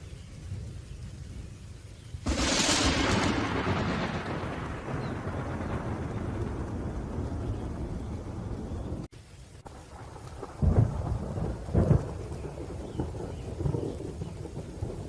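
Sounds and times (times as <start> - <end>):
steady rain: 0.0 - 15.0
rumbling thunder: 2.2 - 15.0
loud thunder claps: 2.3 - 9.1.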